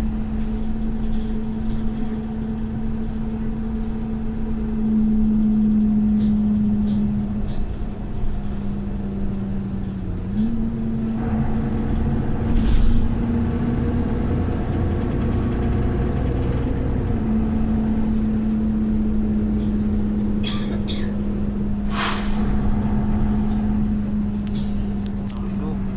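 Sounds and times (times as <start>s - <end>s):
bus engine drone: 0.0s - 25.9s
short air hisses: 21.9s - 22.6s.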